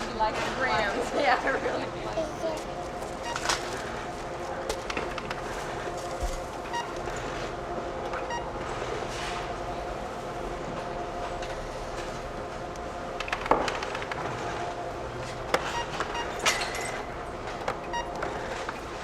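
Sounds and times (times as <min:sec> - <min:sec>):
store hum: 0:00.0 - 0:19.0
till beeps: 0:03.2 - 0:03.6, 0:06.6 - 0:07.3, 0:15.6 - 0:17.0.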